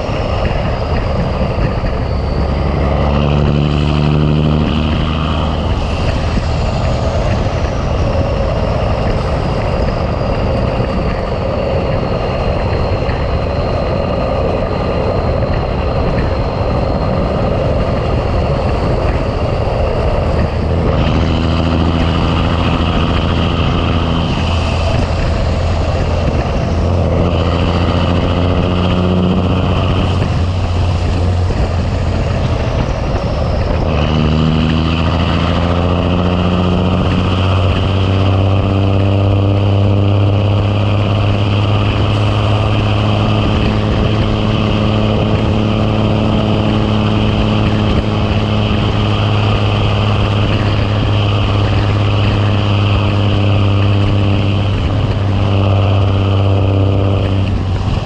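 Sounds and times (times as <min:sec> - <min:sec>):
diesel truck engine under load: 0:00.0 - 0:58.0.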